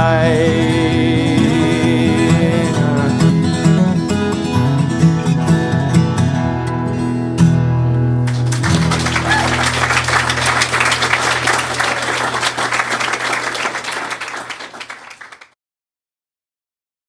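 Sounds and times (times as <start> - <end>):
acoustic guitar chord ringing: 0.0 - 13.5
audience applauding: 8.3 - 15.5.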